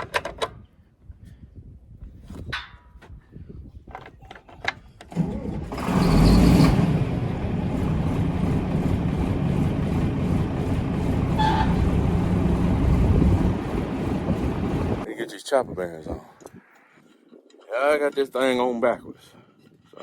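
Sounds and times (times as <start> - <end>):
engine cranking and starting: 5.0 - 15.0
engine running: 5.1 - 15.1.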